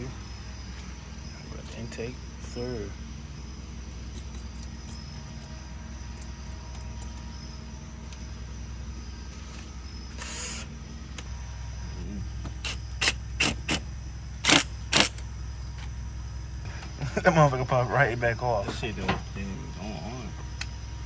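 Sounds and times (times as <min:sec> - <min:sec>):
car engine idling: 0:00.0 - 0:21.0
sharp loud clicks: 0:12.6 - 0:15.3.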